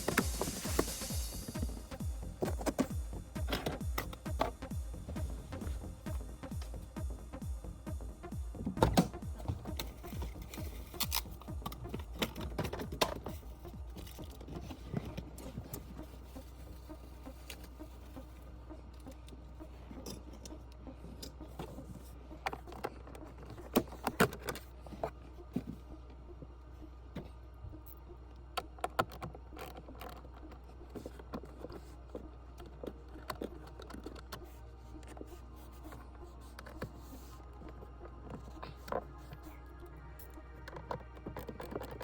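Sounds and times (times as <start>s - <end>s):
steady low hum: 0.0s - 42.0s
plastic parts clicking and rattling: 8.7s - 16.4s, 18.9s - 25.8s, 28.6s - 37.0s, 40.2s - 42.0s.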